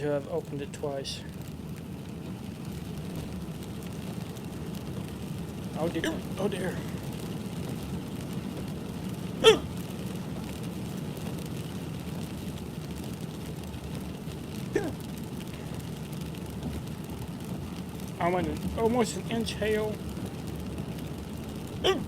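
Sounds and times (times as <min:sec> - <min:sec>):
low background noise: 0:00.0 - 0:22.0
man hiccuping: 0:06.0 - 0:06.3, 0:09.4 - 0:09.7, 0:14.7 - 0:15.0, 0:21.8 - 0:22.0.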